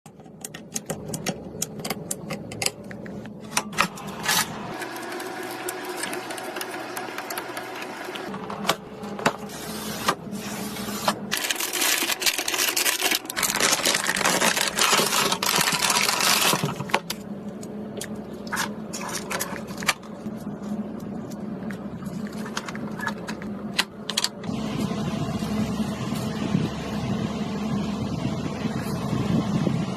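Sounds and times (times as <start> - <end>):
computer parts clicking and knocking: 0.1 - 9.5, 22.4 - 24.5
steady low hum: 0.1 - 29.9
rushing crackling noise: 11.3 - 17.0.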